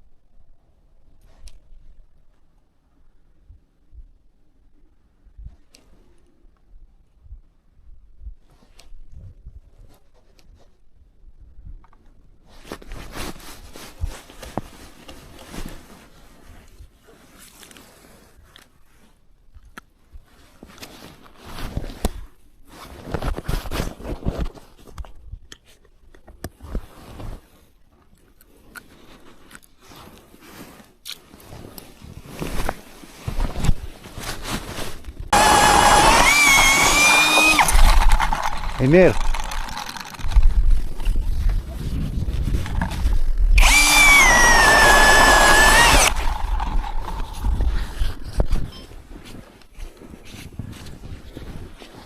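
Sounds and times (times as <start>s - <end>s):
scraping and rustling handling noise: 12.4s - 35.3s.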